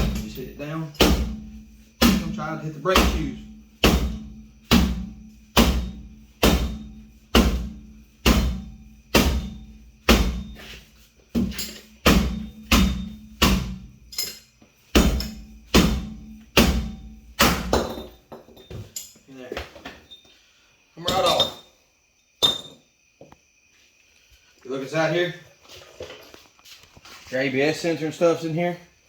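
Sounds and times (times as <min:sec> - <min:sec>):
hammer blows on metal: 0:00.0 - 0:10.8.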